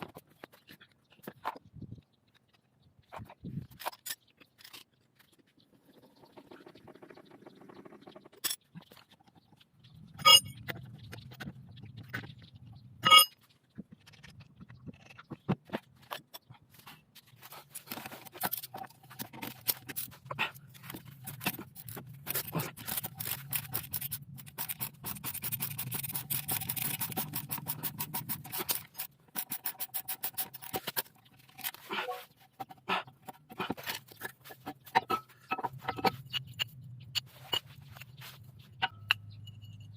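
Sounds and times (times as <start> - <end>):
metallic clicks and scrapes: 2.3 - 5.7, 8.0 - 39.9
rapid ratchet clicking: 22.4 - 31.1.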